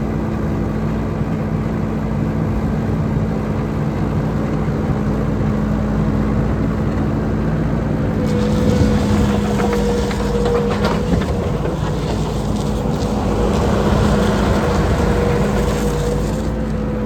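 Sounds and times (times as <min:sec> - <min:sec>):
diesel engine running steadily: 0:00.0 - 0:17.0.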